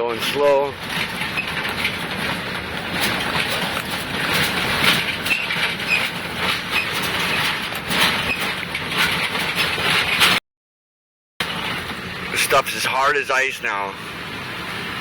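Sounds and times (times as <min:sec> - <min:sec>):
car tyres rolling over snow: 0:00.1 - 0:10.4.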